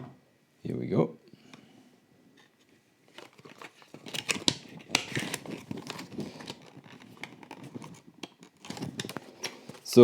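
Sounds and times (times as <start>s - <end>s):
packaging crinkling and rustling: 3.0s - 10.0s.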